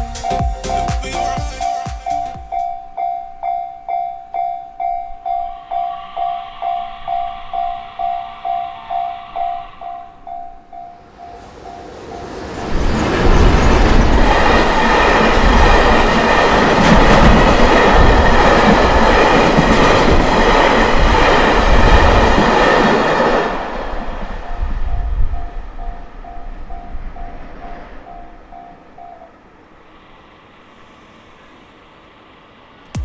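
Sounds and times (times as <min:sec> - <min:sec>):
crossing warning bell ringing: 0:00.0 - 0:13.4, 0:24.5 - 0:29.8
train rumbling past: 0:00.0 - 0:33.0
train wheels clacking on rails: 0:11.3 - 0:23.5.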